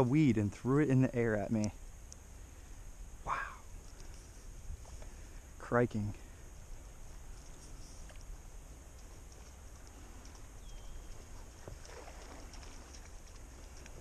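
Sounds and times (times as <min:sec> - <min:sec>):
small ticks: 0:01.5 - 0:02.7, 0:03.5 - 0:14.0
water lapping: 0:09.0 - 0:14.0.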